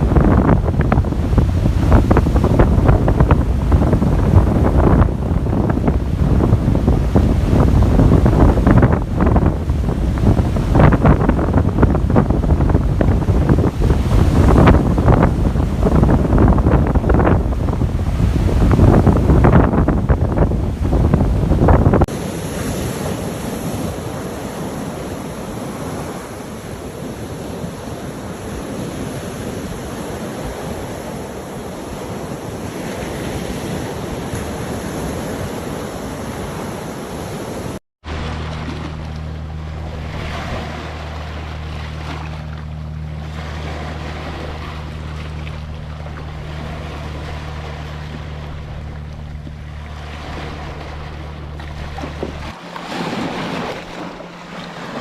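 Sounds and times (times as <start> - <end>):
ocean surf washing: 0.0 - 55.0
steady low drone: 38.0 - 55.0.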